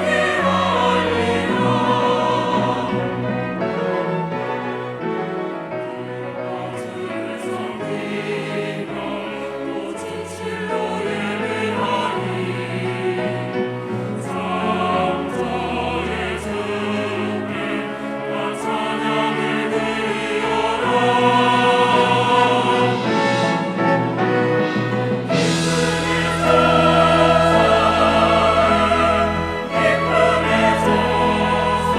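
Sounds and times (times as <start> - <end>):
church choir singing: 0.0 - 31.9
instrumental accompaniment: 18.7 - 31.9.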